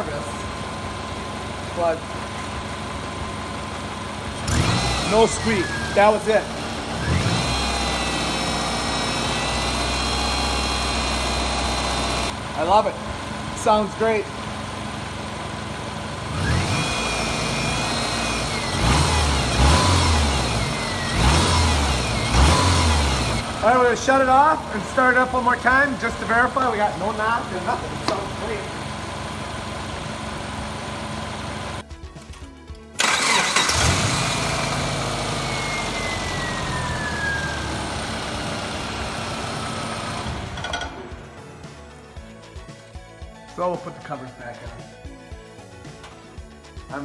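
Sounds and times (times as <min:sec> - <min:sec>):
car engine revving: 0:04.3 - 0:12.4, 0:16.2 - 0:31.8, 0:33.0 - 0:41.3
engine whine falling in pitch: 0:33.2 - 0:38.6.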